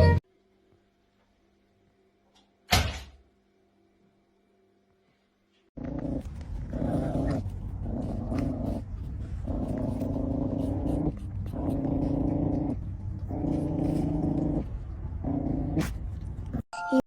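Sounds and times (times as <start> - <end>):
dog growling: 5.8 - 16.6.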